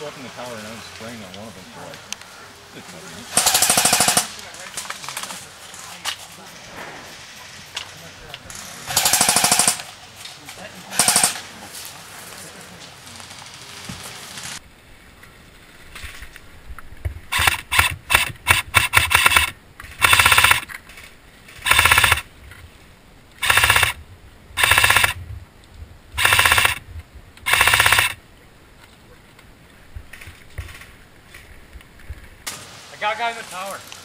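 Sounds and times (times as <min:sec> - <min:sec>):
airsoft rifle firing bursts: 0:03.4 - 0:04.3, 0:08.9 - 0:09.9, 0:11.0 - 0:11.5, 0:17.3 - 0:20.7, 0:21.6 - 0:22.3, 0:23.4 - 0:24.0, 0:24.6 - 0:25.2, 0:26.2 - 0:26.8, 0:27.5 - 0:28.2.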